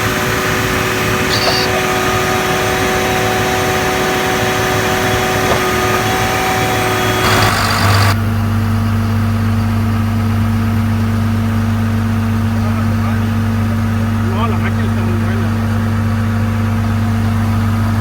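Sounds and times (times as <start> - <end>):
diesel engine running: 0.0 - 8.2
high engine whine: 0.0 - 8.2.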